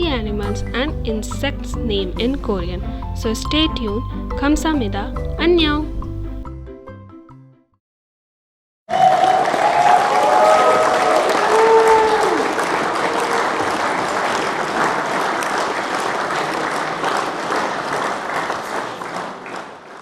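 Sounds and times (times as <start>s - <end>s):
crowd applause: 8.9s - 20.0s.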